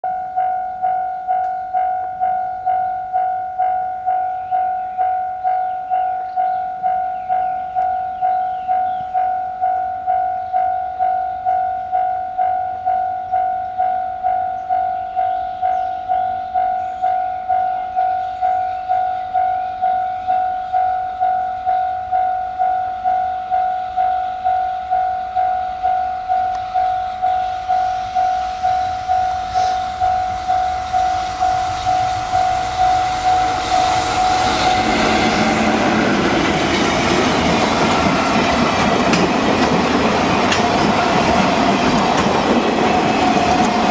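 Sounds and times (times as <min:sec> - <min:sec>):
level-crossing alarm ringing: 0:00.0 - 0:43.9
train wheels clattering over rail joints: 0:34.3 - 0:43.9.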